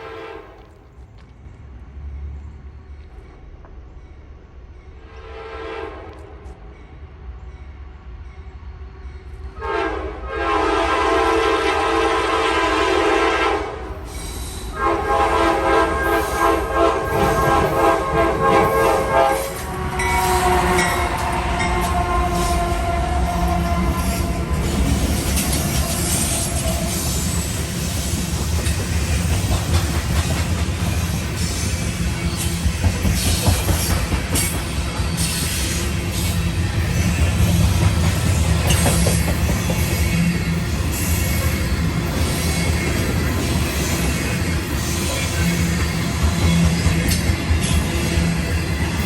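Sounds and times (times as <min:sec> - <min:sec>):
locomotive air horn blasts: 0:00.0 - 0:00.6, 0:05.1 - 0:06.4, 0:09.6 - 0:13.9, 0:14.7 - 0:27.2
train rumble and clatter: 0:00.0 - 0:49.0.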